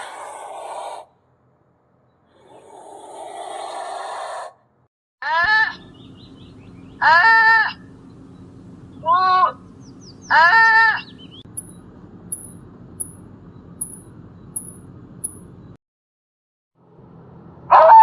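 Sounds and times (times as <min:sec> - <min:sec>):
animal breathy hissing exhalation: 0:00.0 - 0:01.1, 0:02.3 - 0:04.6.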